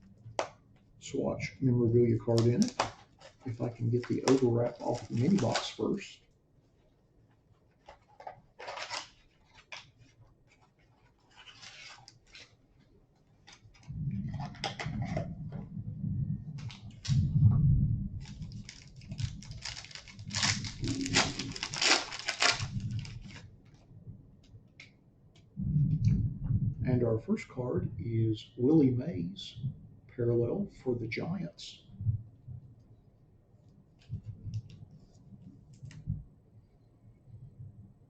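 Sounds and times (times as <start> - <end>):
plastic wrap crinkling and tearing: 2.2 - 6.0, 7.8 - 12.6, 16.6 - 17.3, 18.2 - 23.8
box handling: 7.8 - 9.9.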